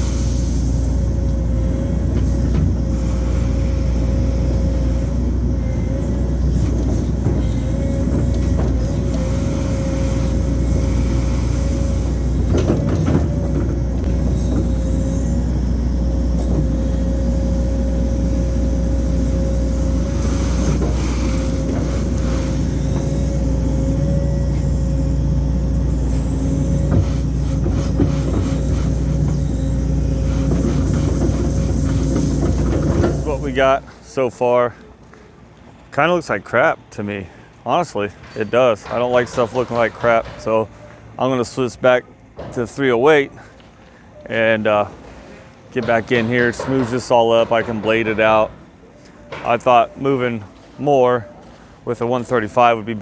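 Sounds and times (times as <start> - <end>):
hydraulic whine: 0.0 - 34.9
excavator diesel engine running: 0.0 - 42.5
metal knocks and clanks: 38.2 - 40.7, 45.8 - 48.5.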